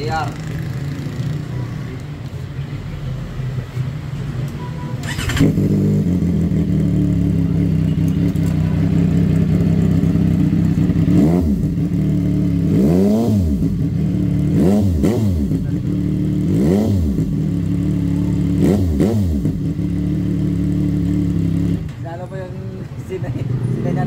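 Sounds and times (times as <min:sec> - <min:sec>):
engine revving: 0:05.0 - 0:21.9
motorcycle engine idling: 0:05.0 - 0:21.9.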